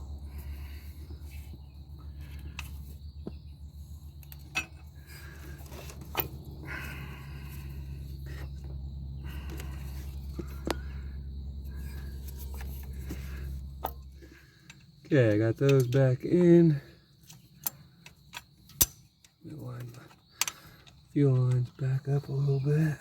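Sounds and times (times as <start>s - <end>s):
low background hum: 0.0s - 23.0s
light clicks and metallic knocks: 4.1s - 6.6s, 7.4s - 16.6s, 17.2s - 22.4s.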